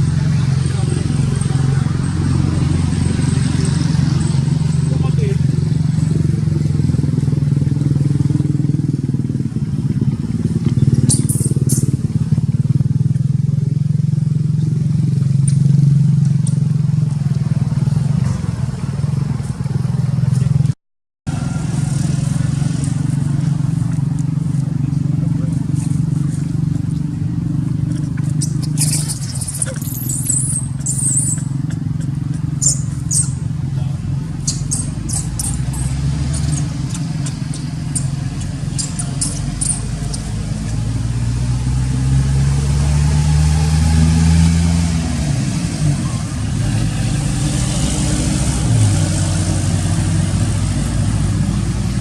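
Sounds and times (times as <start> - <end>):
low motor hum: 0.0 - 52.0
high-pitched wavy squeaks: 28.4 - 33.4, 34.5 - 40.9
small engine running: 28.6 - 41.4.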